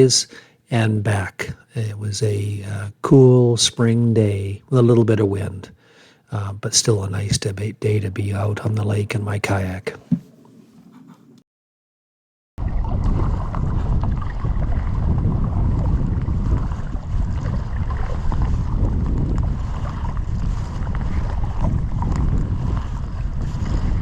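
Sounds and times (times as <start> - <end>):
water around a kayak: 12.6 - 24.0
wind buffeting microphone: 12.6 - 24.0.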